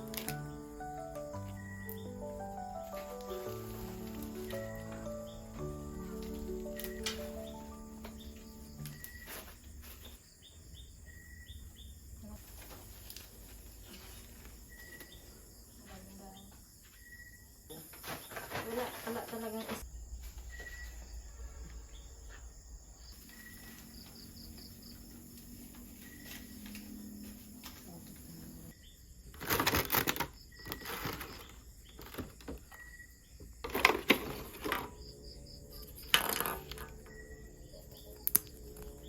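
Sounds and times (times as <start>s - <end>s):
crickets chirping: 0.0s - 39.0s
rustling: 2.4s - 10.7s, 12.2s - 16.1s.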